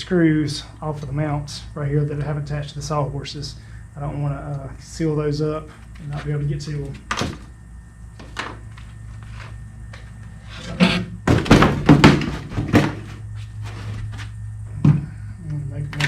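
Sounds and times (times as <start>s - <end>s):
steady low hum: 0.0s - 16.0s
workshop knocks and thunks: 10.7s - 13.2s.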